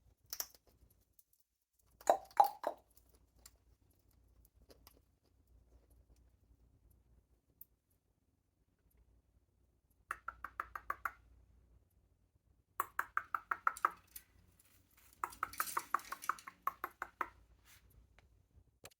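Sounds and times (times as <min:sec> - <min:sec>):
parrot making sharp clicks: 0:10.1 - 0:11.2.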